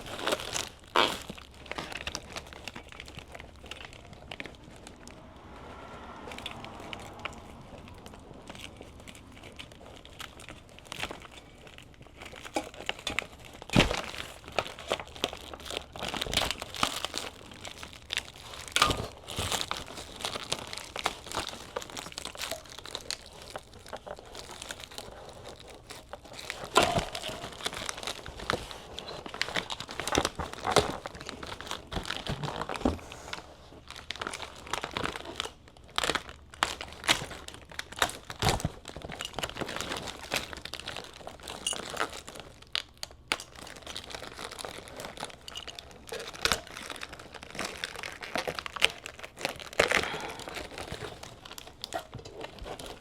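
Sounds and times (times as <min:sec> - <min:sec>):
crinkling and rustling: 0:00.0 - 0:53.0.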